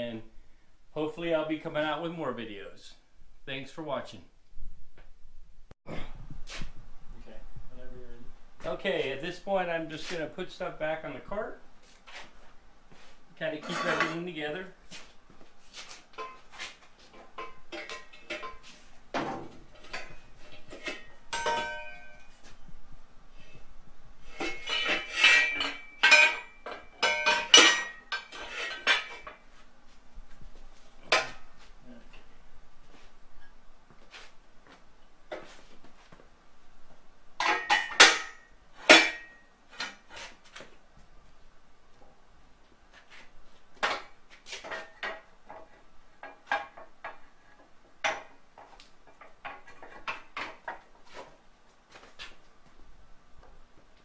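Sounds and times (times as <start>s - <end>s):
metal tools clanking: 13.5s - 14.5s, 16.2s - 18.8s, 19.7s - 22.6s, 24.3s - 29.4s, 37.4s - 40.0s.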